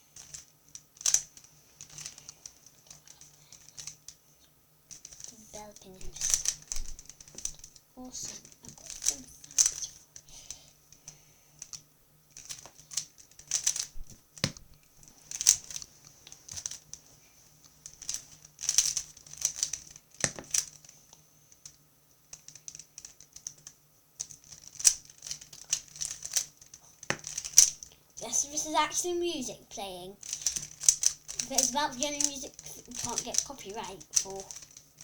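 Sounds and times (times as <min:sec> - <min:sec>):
speed cube clicking turns: 0:00.2 - 0:04.2, 0:04.9 - 0:14.6, 0:15.2 - 0:17.0, 0:17.7 - 0:21.0, 0:21.6 - 0:35.0.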